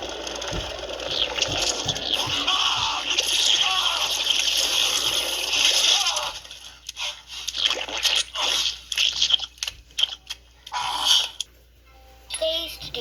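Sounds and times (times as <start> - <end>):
water splashing and squelching: 0.0 - 10.3.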